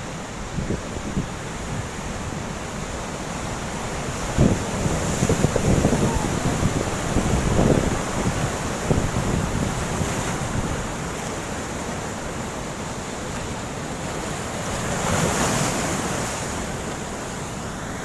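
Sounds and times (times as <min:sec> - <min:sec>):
sea waves breaking on shore: 0:00.0 - 0:18.0
wind buffeting microphone: 0:03.9 - 0:11.1.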